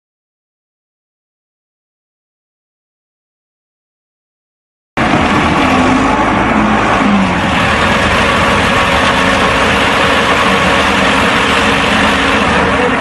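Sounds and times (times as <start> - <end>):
diesel concrete pump running: 5.0 - 13.0.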